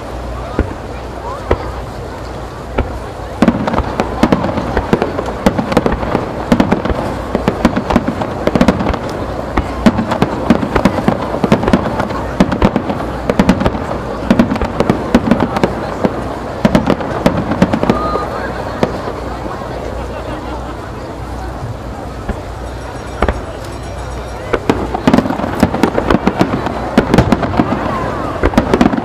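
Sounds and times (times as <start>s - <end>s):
fireworks bursting: 0.0s - 29.0s.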